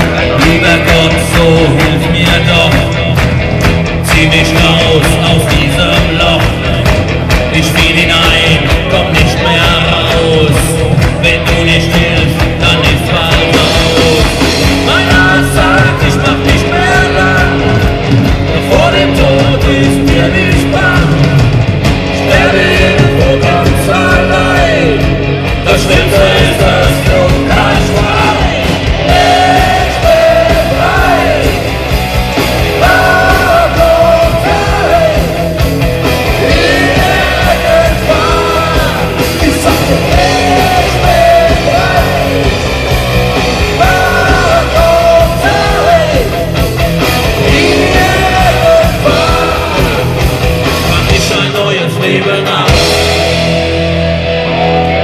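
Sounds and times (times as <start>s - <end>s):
person singing: 0.0s - 3.4s, 4.0s - 21.6s, 22.2s - 31.7s, 32.6s - 35.6s, 36.2s - 42.7s, 43.6s - 46.6s, 47.2s - 53.0s
rock band playing live: 0.0s - 55.0s.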